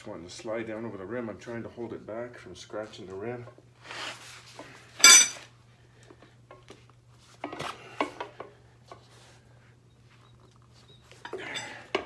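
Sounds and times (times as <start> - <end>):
metal clinks and scrapes: 5.0 - 5.4.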